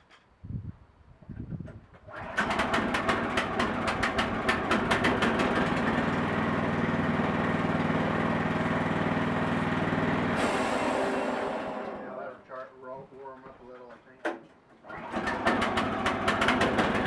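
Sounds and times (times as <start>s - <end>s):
sawmill engine starting and running: 2.0s - 12.7s, 14.8s - 17.0s.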